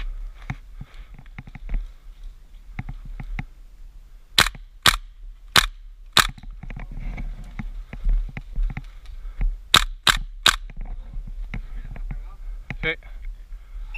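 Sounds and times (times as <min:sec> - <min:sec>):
airsoft gun shots: 0:04.4 - 0:05.0, 0:05.6 - 0:06.4, 0:09.7 - 0:10.6.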